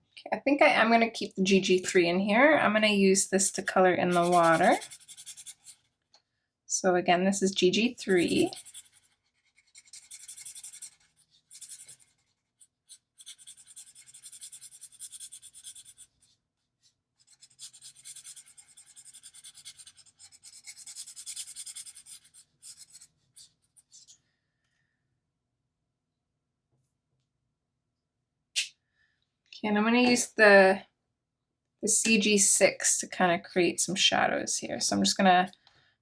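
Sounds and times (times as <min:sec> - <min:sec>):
marker scratching on paper: 0:03.4 - 0:05.9, 0:07.9 - 0:24.2.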